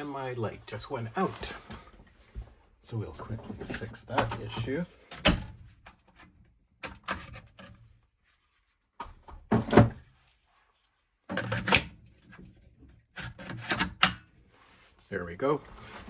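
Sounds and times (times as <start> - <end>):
knocks and clunks on a bench: 9.0 - 10.0.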